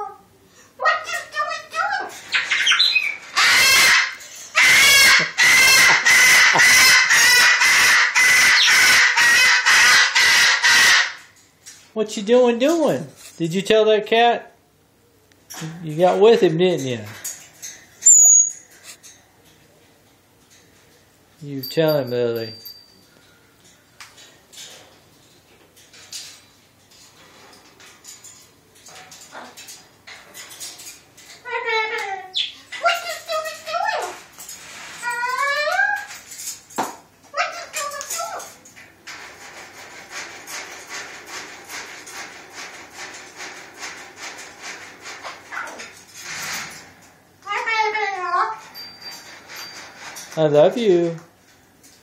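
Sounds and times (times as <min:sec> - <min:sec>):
parrot screeching: 0:00.8 - 0:11.3, 0:18.0 - 0:18.7, 0:29.3 - 0:29.6, 0:31.3 - 0:34.2, 0:34.9 - 0:36.2, 0:37.3 - 0:38.6, 0:45.2 - 0:46.0, 0:47.4 - 0:48.7.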